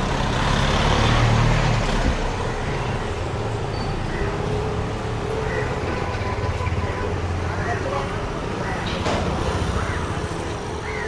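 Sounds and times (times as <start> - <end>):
vehicle engine rumble passing: 0.0 - 3.6
street traffic road noise: 0.0 - 11.0.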